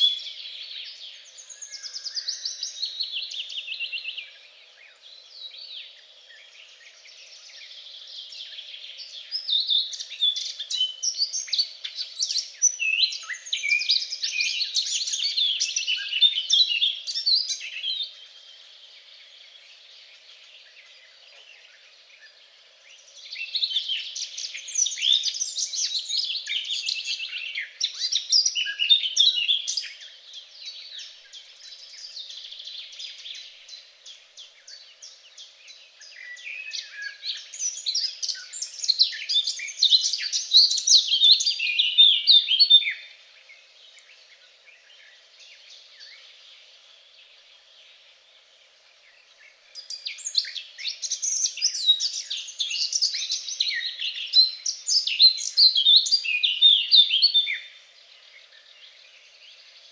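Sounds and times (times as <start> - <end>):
songbirds twittering: 0.0 - 59.9.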